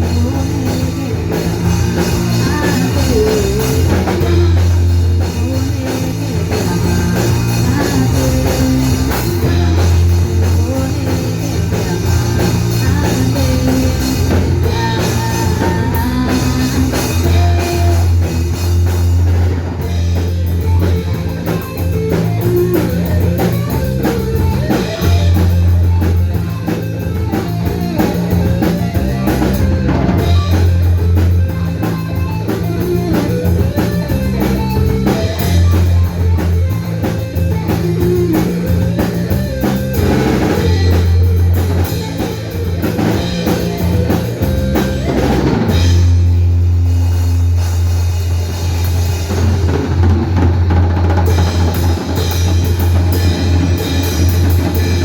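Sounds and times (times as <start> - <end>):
bass guitar: 0.0 - 55.0
drum kit beat: 0.0 - 55.0
electric guitar: 0.0 - 55.0.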